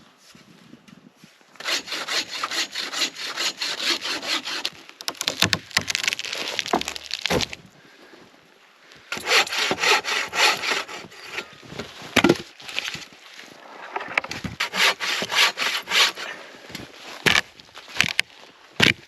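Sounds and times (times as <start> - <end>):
hand saw cutting wood: 1.6 - 7.4, 9.1 - 12.9, 14.2 - 16.3.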